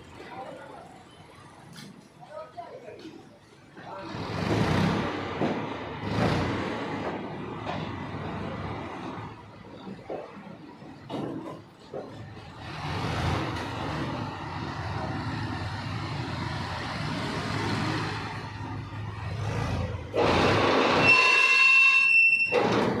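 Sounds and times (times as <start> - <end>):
machinery noise: 11.9 - 22.9.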